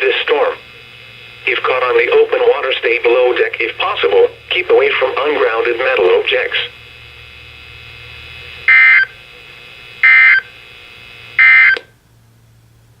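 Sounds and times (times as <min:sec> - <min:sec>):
digital data tone bursts: 0:08.6 - 0:09.2, 0:10.0 - 0:10.6, 0:11.4 - 0:11.8.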